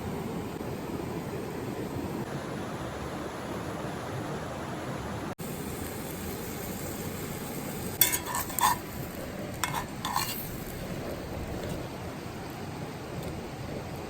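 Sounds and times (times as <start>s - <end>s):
utensil clinking against pot: 8.0s - 8.9s, 9.6s - 10.5s.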